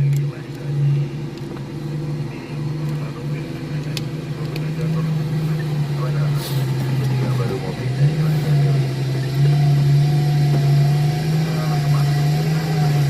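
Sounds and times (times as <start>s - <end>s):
diesel engine droning: 0.0s - 13.0s.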